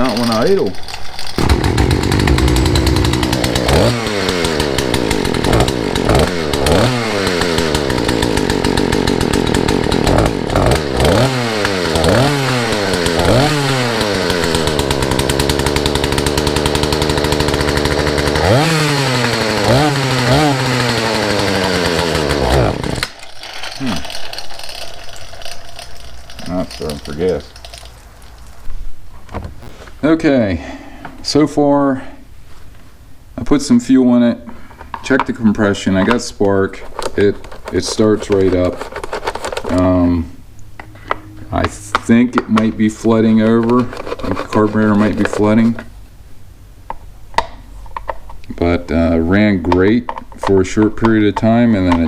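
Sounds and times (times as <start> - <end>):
chainsaw engine revving: 1.2 - 24.4.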